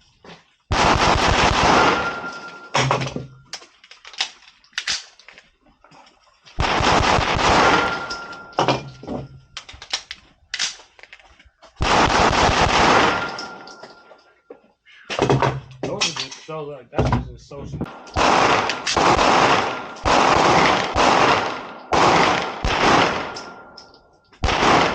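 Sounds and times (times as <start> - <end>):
loud pistol shots: 0.7 - 3.0, 6.6 - 8.9, 11.8 - 13.7, 17.9 - 23.8, 24.4 - 24.9.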